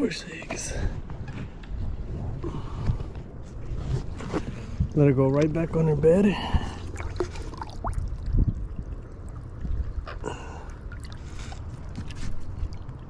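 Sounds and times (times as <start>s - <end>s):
low steady rumble: 0.0s - 13.0s
water trickling and dripping: 6.5s - 13.0s.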